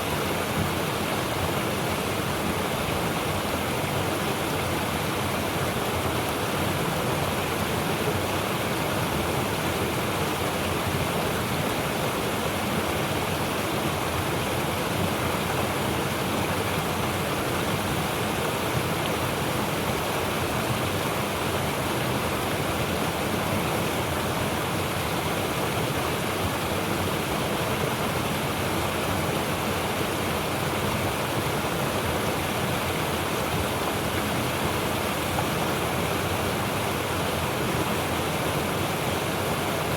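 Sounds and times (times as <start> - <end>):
stream rushing over rocks: 0.0 - 39.9.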